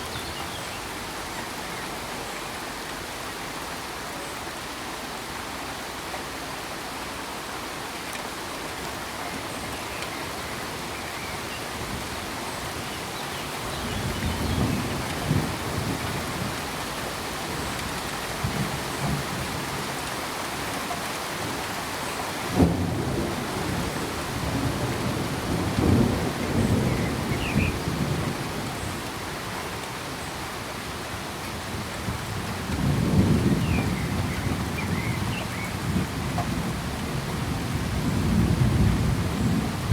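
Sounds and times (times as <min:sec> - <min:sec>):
steady rain: 0:00.0 - 0:39.9
thunder rumbling: 0:32.4 - 0:39.9.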